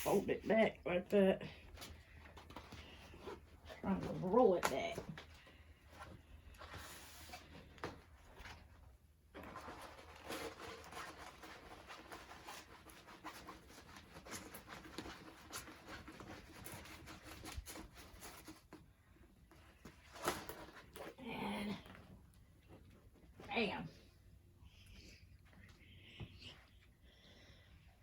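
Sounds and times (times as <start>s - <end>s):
plastic film rustling and crinkling: 8.2s - 18.8s.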